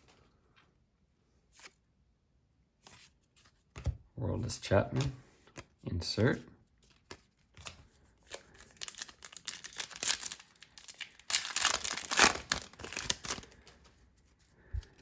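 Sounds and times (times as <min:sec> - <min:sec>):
wrapper tearing and crinkling: 0:08.4 - 0:13.8.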